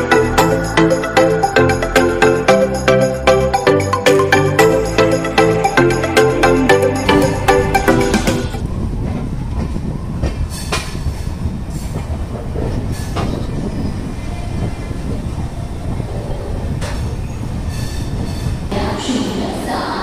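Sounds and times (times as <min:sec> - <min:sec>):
train rumbling on rails: 0:04.6 - 0:20.0.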